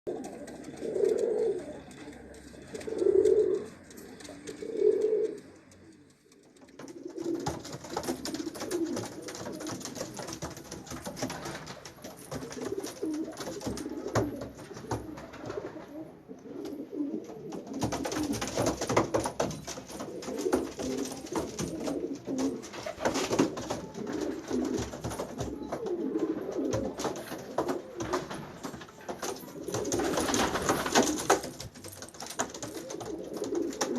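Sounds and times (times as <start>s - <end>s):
pigeons cooing: 0.1s - 6.0s, 12.2s - 19.0s, 20.0s - 28.3s, 32.6s - 33.9s.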